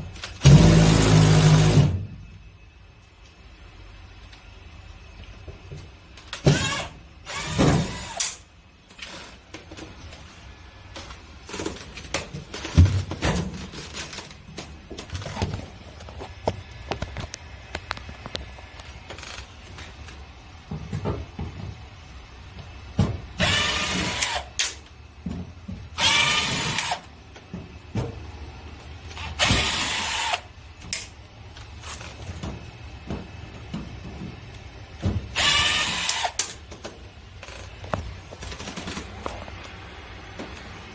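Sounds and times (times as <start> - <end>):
cordless power drill whirring: 6.5 - 8.4, 23.4 - 24.6, 26.0 - 27.1, 29.2 - 30.5, 35.4 - 36.5.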